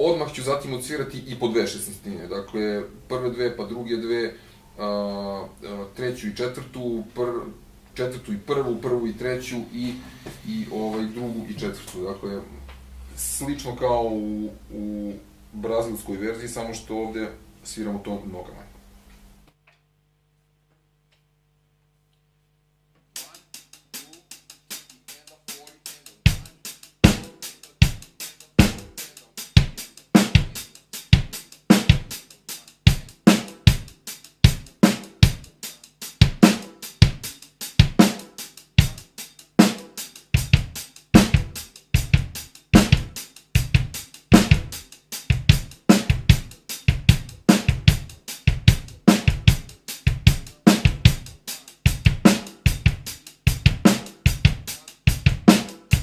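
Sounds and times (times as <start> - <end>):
hi-hat: 23.2 - 56.0
snare drum: 23.2 - 56.0
bass drum: 25.1 - 32.2, 32.9 - 56.0.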